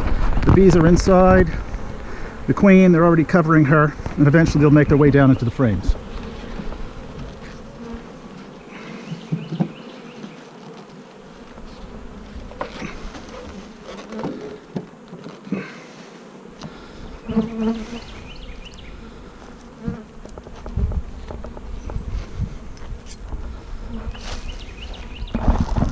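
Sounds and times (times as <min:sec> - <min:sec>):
bees buzzing: 0:00.0 - 0:25.9
knocks and thumps: 0:09.1 - 0:09.8.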